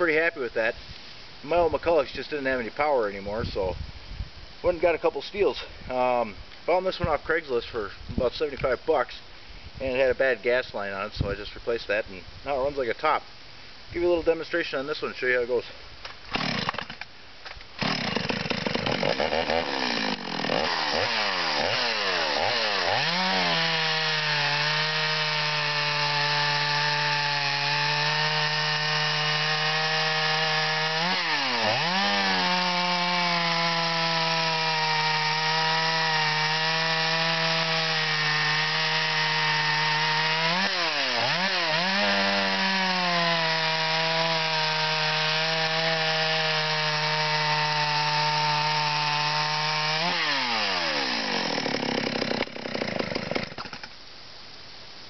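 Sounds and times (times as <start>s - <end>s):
chainsaw engine running: 16.4s - 17.0s, 17.8s - 53.9s.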